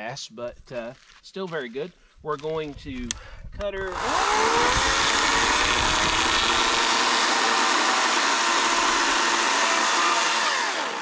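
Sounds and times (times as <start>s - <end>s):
electric chainsaw cutting log: 3.9s - 11.0s.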